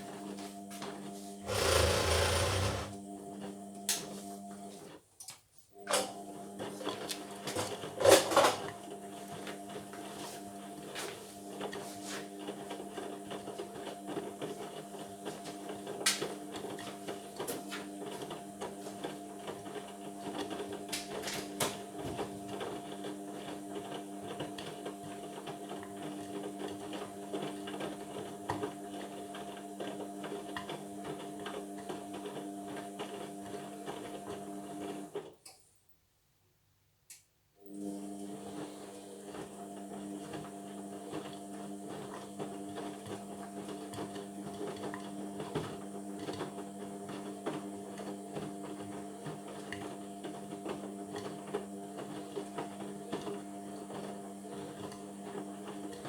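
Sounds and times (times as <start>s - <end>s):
washing machine clatter: 1.5s - 3.0s.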